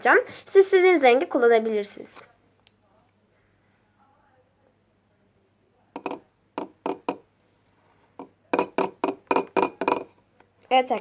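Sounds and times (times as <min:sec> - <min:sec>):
spoon clinking against a bowl: 0:06.0 - 0:07.2.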